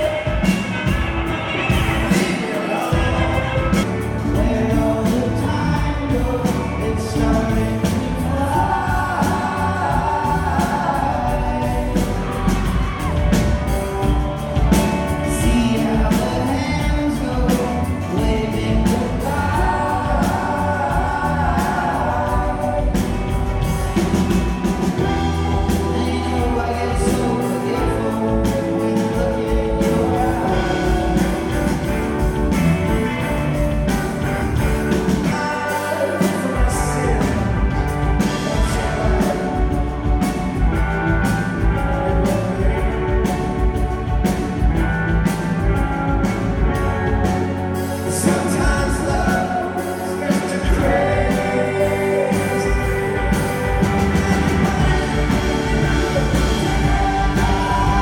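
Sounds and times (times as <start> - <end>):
live rock band playing: 0.0 - 58.0
people singing: 0.0 - 58.0.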